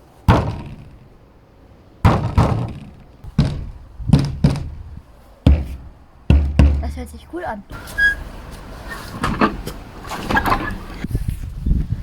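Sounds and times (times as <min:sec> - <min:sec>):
knocks on an object: 0:02.1 - 0:04.8, 0:05.4 - 0:06.9.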